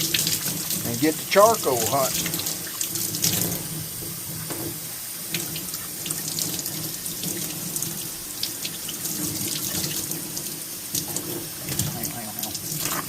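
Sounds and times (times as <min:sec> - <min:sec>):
water running: 0:00.0 - 0:13.0.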